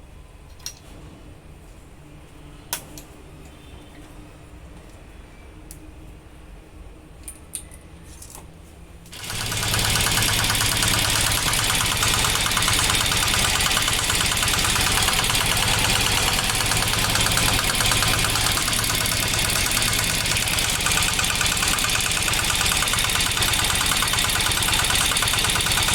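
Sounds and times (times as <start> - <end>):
diesel engine starting and clattering: 9.2 - 25.9.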